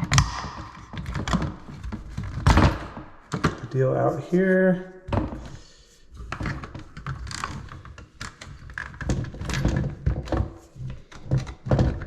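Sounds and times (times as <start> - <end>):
hands clicking and tapping parts: 0.0 - 2.4, 6.2 - 12.0.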